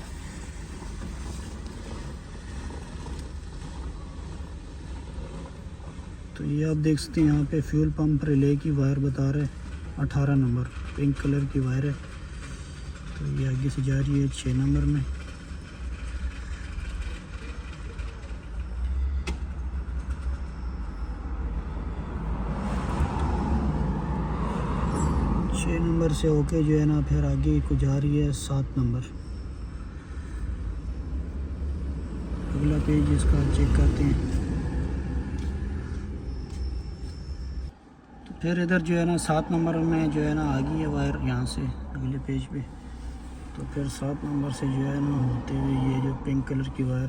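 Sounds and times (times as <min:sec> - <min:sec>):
vehicle rumble: 0:00.0 - 0:47.0.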